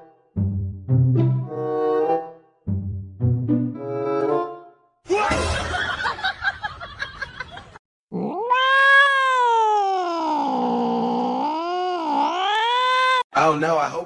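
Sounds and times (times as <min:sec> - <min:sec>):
cat yowling: 0:08.1 - 0:13.2.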